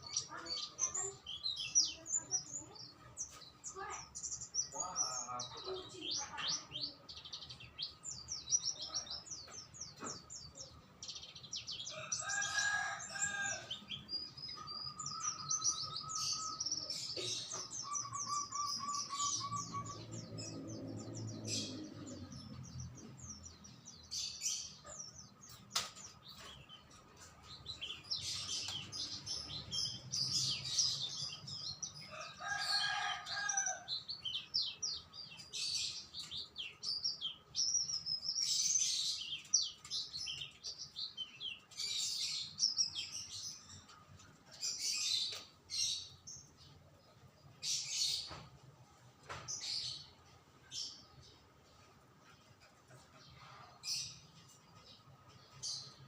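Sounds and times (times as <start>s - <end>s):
songbirds chirping and trilling: 0.0s - 56.0s
low full bird call: 11.2s - 20.7s.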